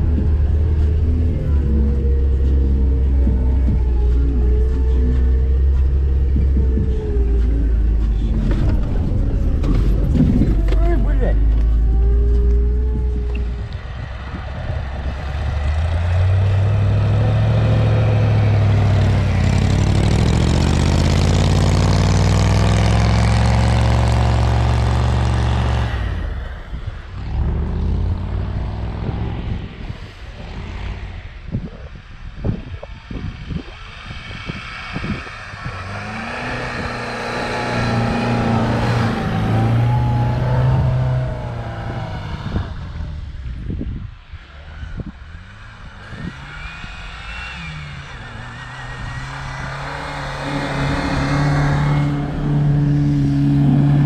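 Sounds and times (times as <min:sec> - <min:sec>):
engine revving hard: 0:15.0 - 0:26.6, 0:34.5 - 0:43.1, 0:45.0 - 0:54.0.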